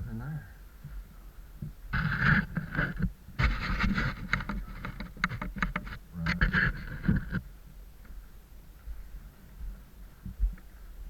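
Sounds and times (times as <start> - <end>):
rustling and scraping movement: 1.9 - 7.5
small clicks and knocks: 2.0 - 7.4.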